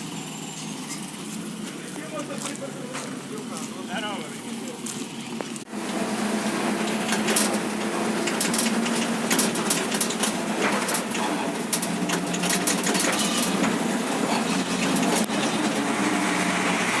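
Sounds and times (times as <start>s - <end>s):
truck engine droning: 0.0s - 17.0s
truck body rattling: 5.9s - 17.0s.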